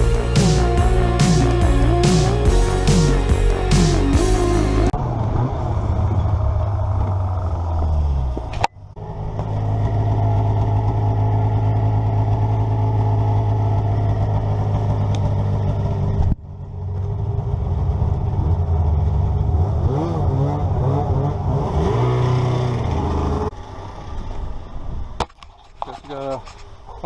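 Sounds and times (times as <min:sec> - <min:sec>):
vehicle engine running: 0:00.0 - 0:05.0.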